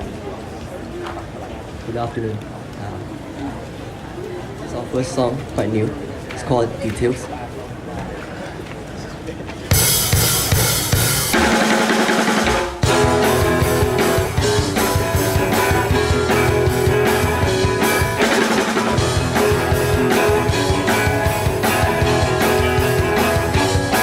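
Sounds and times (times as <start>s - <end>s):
drum kit: 9.7s - 24.0s
electric guitars: 9.7s - 24.0s.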